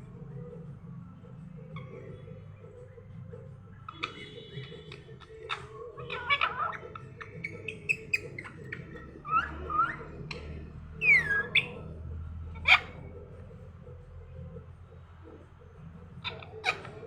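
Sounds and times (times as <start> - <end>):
parrot loud sharp calls: 3.9 - 11.9, 12.6 - 13.1, 16.2 - 17.0.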